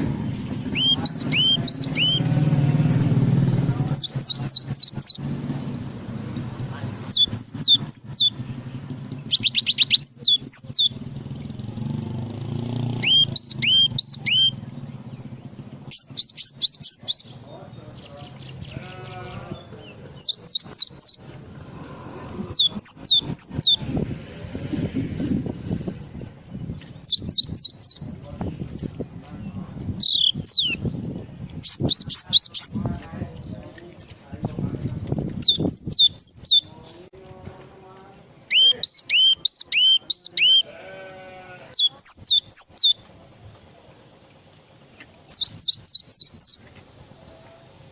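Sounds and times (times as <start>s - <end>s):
songbird whistling: 0.7s - 2.3s, 4.0s - 5.3s, 7.1s - 8.4s, 9.2s - 11.0s, 12.8s - 14.7s, 15.9s - 17.5s, 20.2s - 21.3s, 22.6s - 23.8s, 27.0s - 28.1s, 30.0s - 30.9s, 31.6s - 32.8s, 35.4s - 36.7s, 38.4s - 40.7s, 41.8s - 43.0s, 45.3s - 46.7s.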